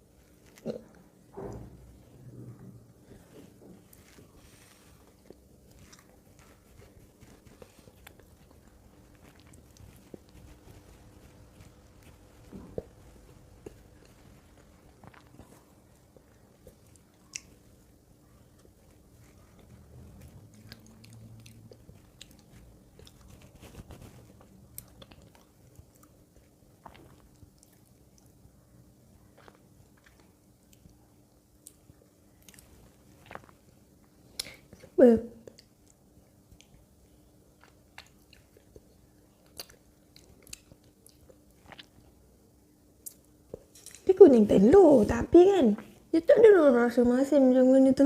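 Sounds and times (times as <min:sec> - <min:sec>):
biting and chewing: 0:03.9 - 0:28.4, 0:37.6 - 0:42.1.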